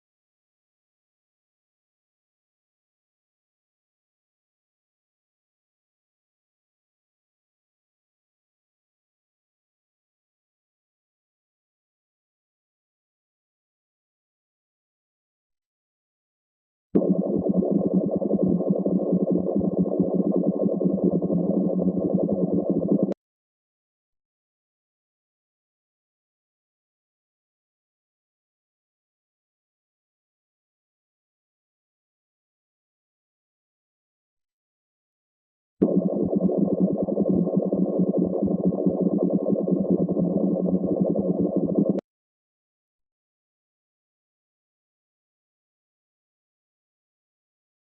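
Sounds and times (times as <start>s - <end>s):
muffled bubbling: 17.0s - 23.2s, 35.8s - 42.0s.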